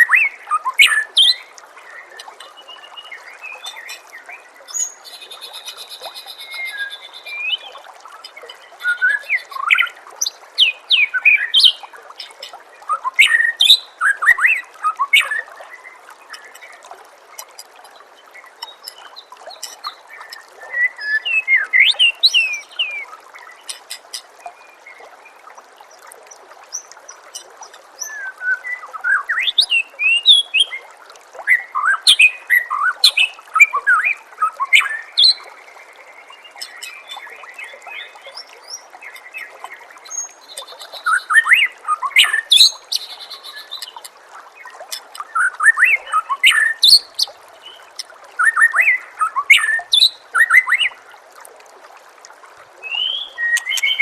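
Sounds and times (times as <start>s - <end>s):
water trickling: 0.0s - 54.0s
bird singing whistled phrases: 4.7s - 7.7s, 8.8s - 9.9s, 52.8s - 54.0s.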